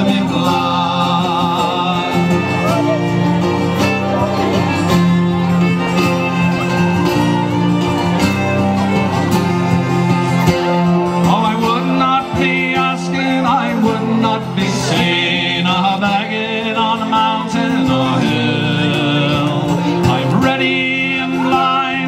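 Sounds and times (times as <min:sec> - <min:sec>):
folk dance band playing: 0:00.0 - 0:22.0.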